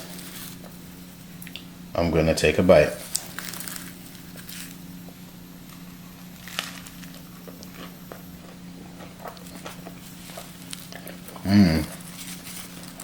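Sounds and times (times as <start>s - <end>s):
steady low hum: 0.0s - 13.0s
chewing crispy pizza: 3.0s - 13.0s.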